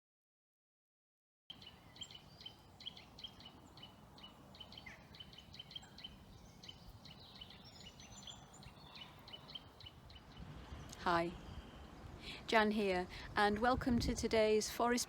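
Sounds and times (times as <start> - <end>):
small birds chirping: 1.5 - 12.0.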